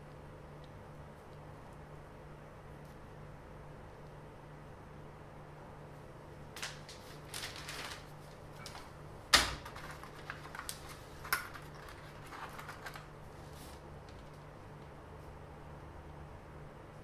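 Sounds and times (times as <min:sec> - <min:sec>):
handling rustles and clicks: 0:06.6 - 0:14.5.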